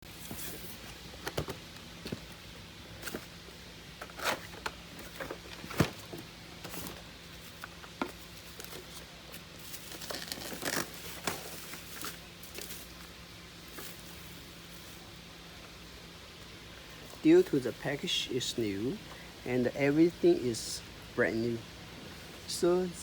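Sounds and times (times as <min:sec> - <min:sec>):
plastic packaging crinkling: 0:04.0 - 0:13.0.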